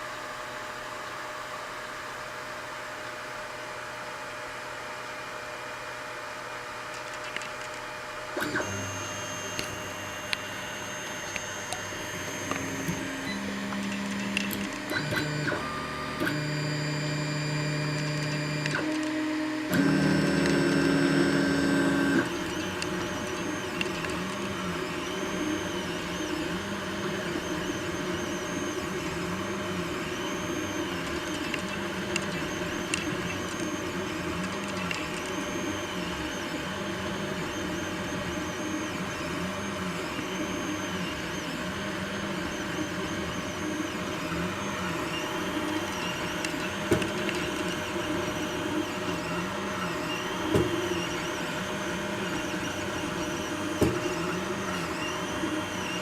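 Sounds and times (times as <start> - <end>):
stepper motors whining: 8.4 - 36.8.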